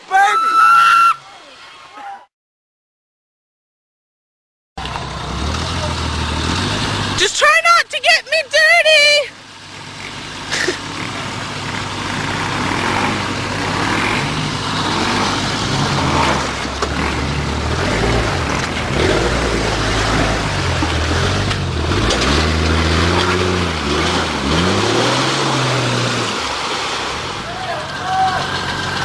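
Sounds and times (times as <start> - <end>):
car engine revving: 4.8 - 7.4, 9.4 - 29.0.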